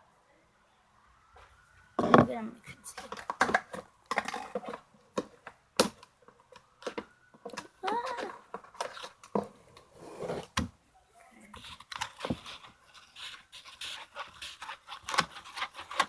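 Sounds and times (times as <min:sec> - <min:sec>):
stick stirring sticky slime: 0:11.4 - 0:16.0.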